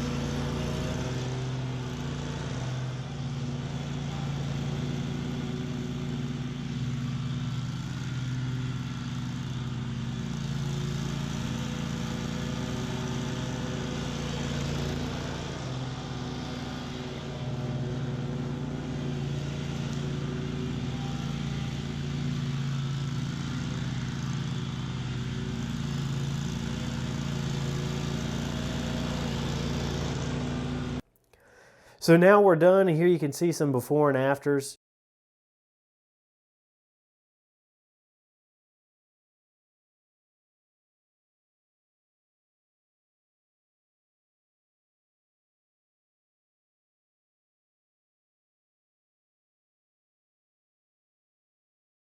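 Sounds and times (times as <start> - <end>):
mower blades cutting weeds: 0.0 - 31.0
mower engine drone: 0.0 - 31.0.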